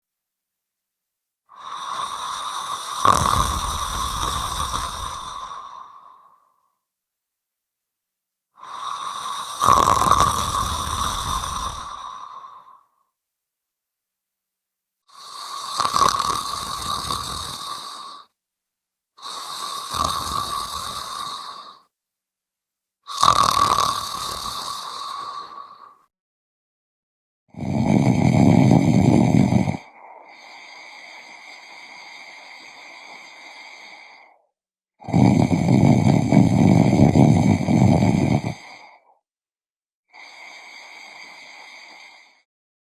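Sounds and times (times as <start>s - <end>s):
person snoring: 1.5s - 6.7s, 8.6s - 13.0s, 15.1s - 18.4s, 19.2s - 21.9s, 23.1s - 26.1s, 27.5s - 34.4s, 35.0s - 39.2s, 40.1s - 42.5s.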